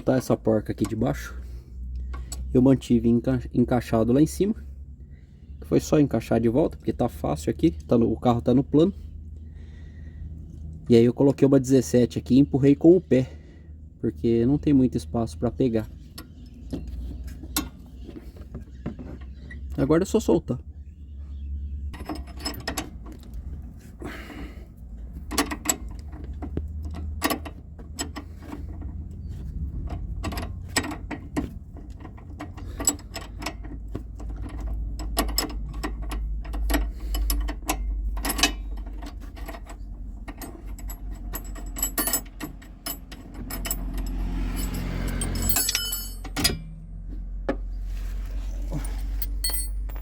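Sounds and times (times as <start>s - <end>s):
low steady hum: 0.0s - 50.0s
wrench and metal parts clinking: 22.0s - 23.4s, 29.8s - 47.0s, 48.6s - 50.0s.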